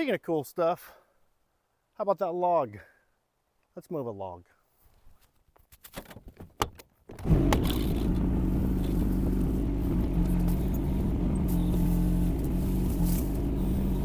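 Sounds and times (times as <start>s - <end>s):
diesel engine running: 7.2s - 14.0s.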